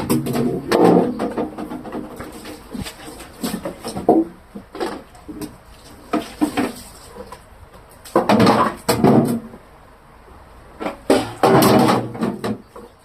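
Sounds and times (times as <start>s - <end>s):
plastic shelves knocking and clattering: 0.0s - 5.6s, 8.1s - 9.5s, 10.8s - 13.0s
scrubbing noise: 1.8s - 4.1s.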